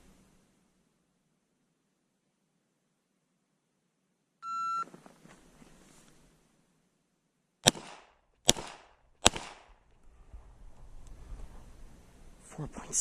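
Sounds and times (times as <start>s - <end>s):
shot timer beep: 4.4s - 4.8s
pistol shots: 7.6s - 9.8s.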